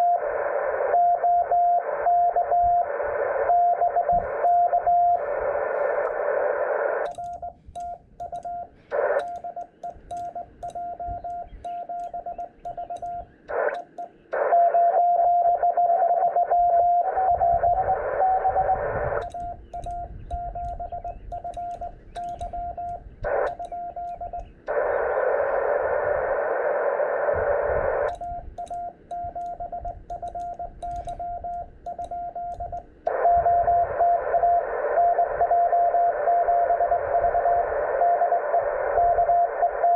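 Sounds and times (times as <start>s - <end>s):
morse code sidetone: 0.0s - 6.2s, 7.0s - 26.2s, 27.8s - 39.9s
receiver hiss: 0.0s - 39.9s
weak distant morse code: 0.0s - 39.9s
faint keying clicks: 7.0s - 14.5s, 19.2s - 24.9s, 28.0s - 33.3s.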